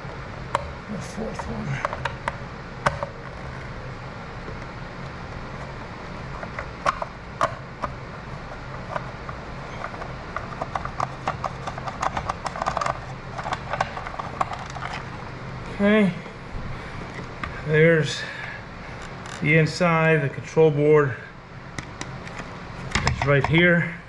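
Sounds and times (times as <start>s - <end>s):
steady low hum: 0.0s - 24.0s
plastic housing clicks and knocks: 6.4s - 8.0s, 9.8s - 15.0s, 21.8s - 23.6s.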